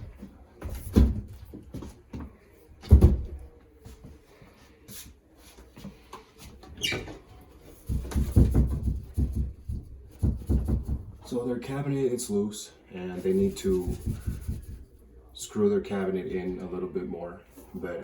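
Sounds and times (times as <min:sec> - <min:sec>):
cabinet rattling thumps: 0:07.8 - 0:11.2
cabinet knocking: 0:07.9 - 0:11.2.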